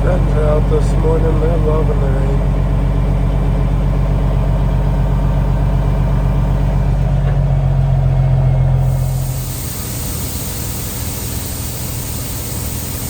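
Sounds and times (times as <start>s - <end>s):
truck diesel engine idling: 0.0s - 13.0s
rising hiss: 8.8s - 13.0s.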